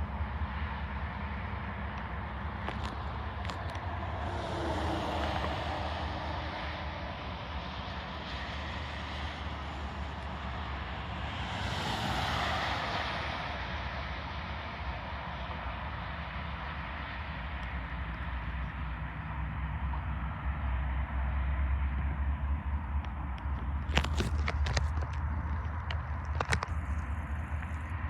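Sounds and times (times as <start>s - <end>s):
train rumbling: 0.0s - 16.0s.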